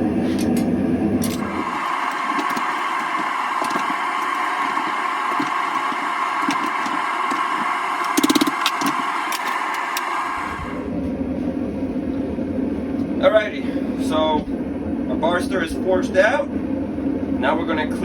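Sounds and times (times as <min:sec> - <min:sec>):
rattle of taps: 0:01.2 - 0:10.2
forge rushing: 0:01.3 - 0:10.9.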